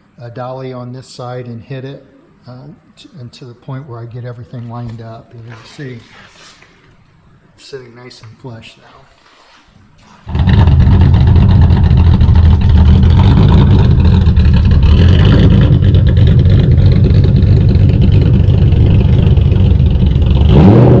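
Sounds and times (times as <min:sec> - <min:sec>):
car engine running loudly: 0:10.3 - 0:21.0.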